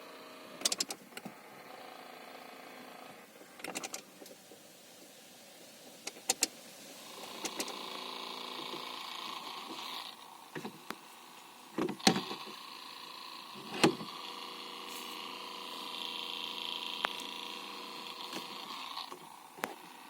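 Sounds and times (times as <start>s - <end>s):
sharp clicks: 0.6s - 1.3s, 6.0s - 6.5s, 7.3s - 7.8s
small electric motor whirring: 6.3s - 20.0s.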